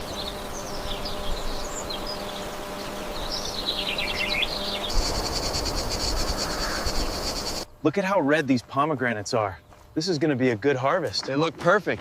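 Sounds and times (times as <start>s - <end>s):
small birds chirping: 0.0s - 7.8s
insect chirring: 3.4s - 7.8s.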